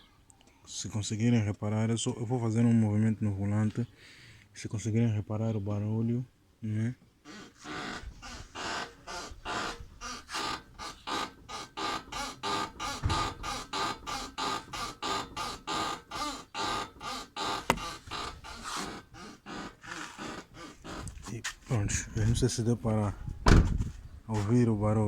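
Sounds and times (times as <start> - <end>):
suspension creaking: 7.8 - 19.1.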